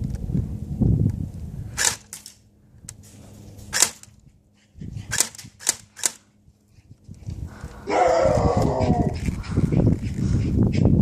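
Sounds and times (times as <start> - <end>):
airsoft gun shots: 1.8 - 2.3, 3.7 - 4.1, 5.1 - 6.2.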